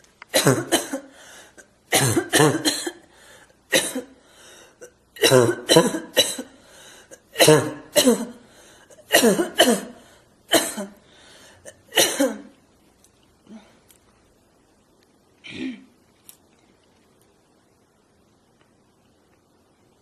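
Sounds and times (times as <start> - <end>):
person coughing harshly: 0.3 - 3.1, 3.7 - 4.2, 4.8 - 11.0, 11.6 - 12.5, 15.4 - 16.0.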